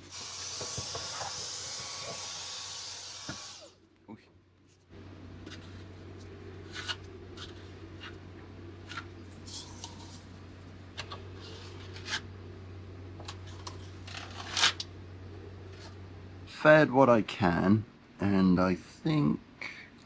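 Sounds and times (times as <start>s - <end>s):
steady low hum: 0.0s - 20.0s
filler scraping and rustling: 5.4s - 8.2s, 11.0s - 12.3s, 13.4s - 14.8s.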